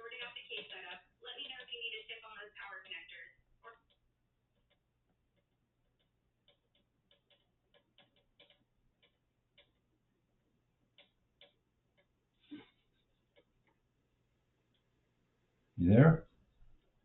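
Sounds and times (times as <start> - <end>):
hands clicking and tapping computer parts: 0.4 - 2.0, 3.8 - 10.0, 10.9 - 13.8.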